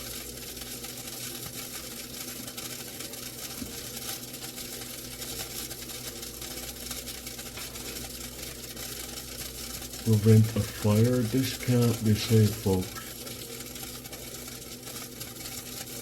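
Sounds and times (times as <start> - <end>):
toaster oven humming: 0.0 - 16.0
food hissing: 5.0 - 14.7.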